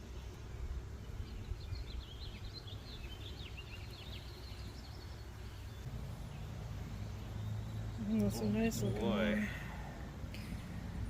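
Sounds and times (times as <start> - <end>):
small bird chirping: 1.0 - 9.5.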